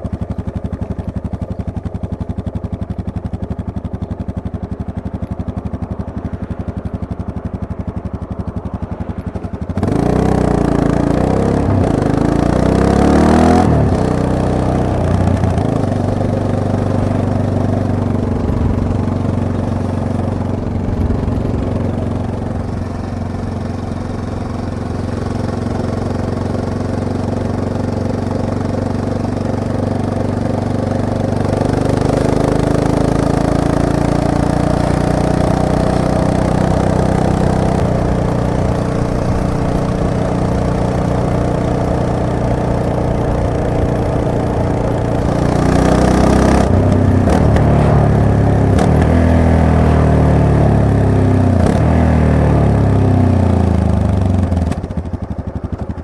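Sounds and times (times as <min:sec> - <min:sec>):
motorcycle engine idling and revving: 0:00.0 - 0:56.0.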